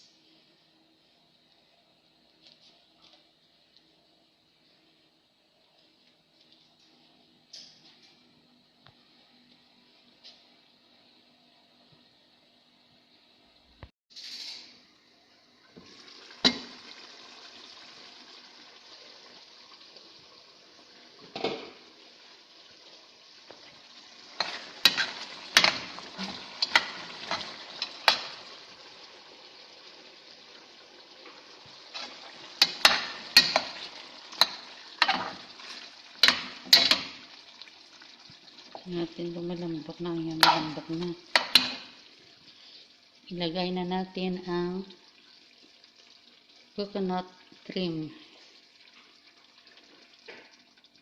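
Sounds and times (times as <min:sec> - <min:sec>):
curry sizzling in a pot: 0:14.2 - 0:51.0
spoon knocking and scraping pot: 0:24.4 - 0:28.4, 0:31.9 - 0:37.2, 0:40.4 - 0:41.9.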